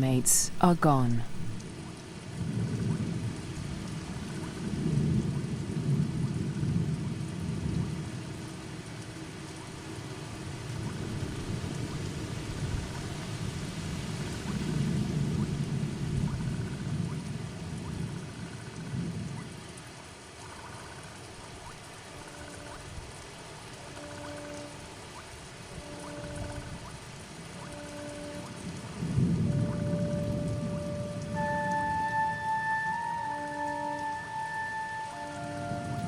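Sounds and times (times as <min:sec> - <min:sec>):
heavy rain: 0:00.0 - 0:36.0
low rolling thunder: 0:28.7 - 0:31.8.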